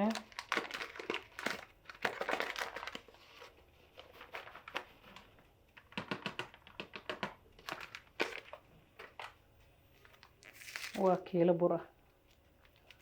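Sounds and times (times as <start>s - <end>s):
plastic bag crinkling: 0.0s - 11.4s, 12.2s - 13.0s
flour pouring: 10.0s - 11.2s.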